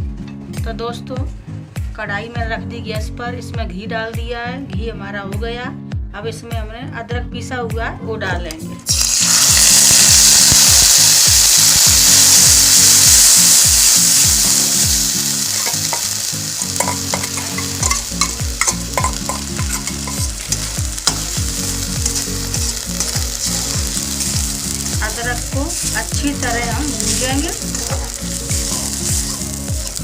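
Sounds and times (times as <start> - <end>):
paste sizzling in hot oil: 8.9 - 30.0
stirring knocks and scrapes: 15.6 - 21.3, 27.7 - 29.5.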